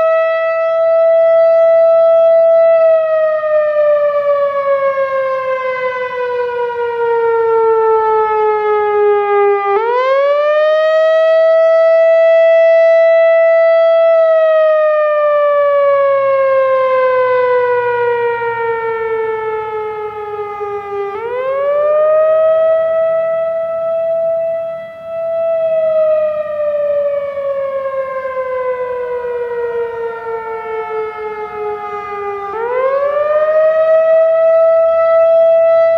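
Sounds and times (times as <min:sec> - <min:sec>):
warning siren wailing: 0:00.0 - 0:35.9.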